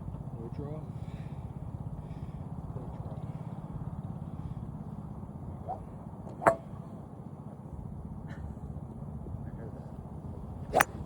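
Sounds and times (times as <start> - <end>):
golf club striking ball: 5.6 - 6.9, 10.6 - 11.0.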